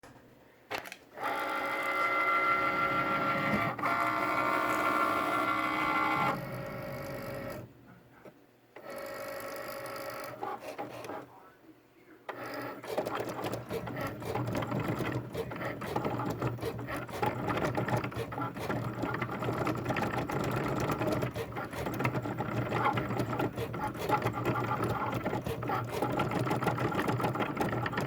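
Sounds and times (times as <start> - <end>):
cutting machine motor whine: 12.3 - 28.0
machine rattling: 12.8 - 28.0.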